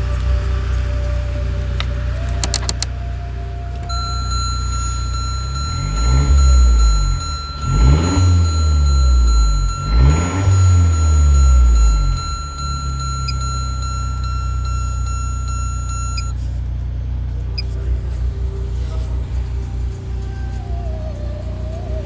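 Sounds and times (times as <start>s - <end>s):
car engine idling and revving: 0.0s - 22.0s
high-pitched electronic alarm tone: 3.9s - 16.4s.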